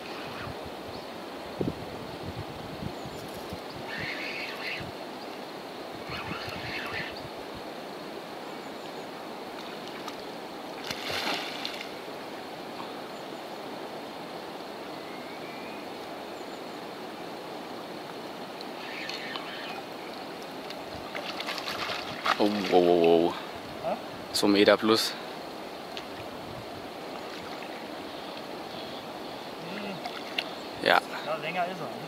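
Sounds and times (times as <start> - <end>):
water rushing: 3.7 - 32.0
hissing splashes: 10.8 - 12.0, 18.6 - 20.3, 21.0 - 23.6.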